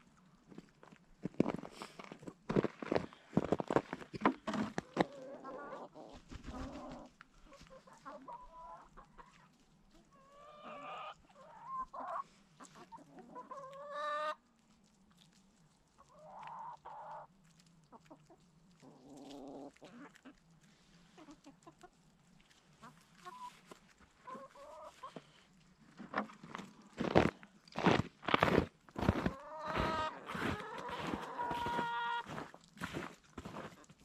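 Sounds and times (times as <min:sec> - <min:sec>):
chickens clucking and calling: 0:04.5 - 0:14.4, 0:16.0 - 0:17.3, 0:17.9 - 0:20.5, 0:21.1 - 0:22.1, 0:22.8 - 0:25.4, 0:27.0 - 0:34.0.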